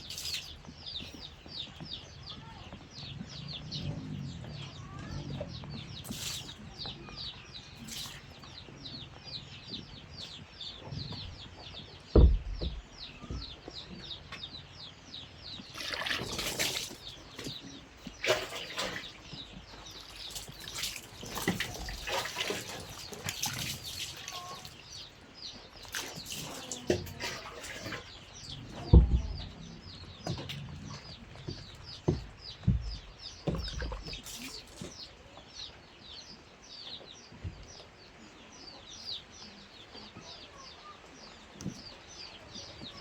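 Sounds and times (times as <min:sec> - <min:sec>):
bird chirping: 0:00.0 - 0:43.0
sharp thump: 0:12.1 - 0:12.8.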